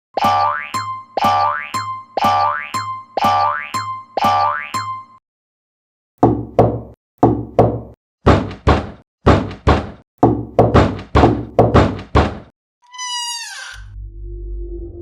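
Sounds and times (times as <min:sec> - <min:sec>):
knocking on a door: 0:06.2 - 0:12.5.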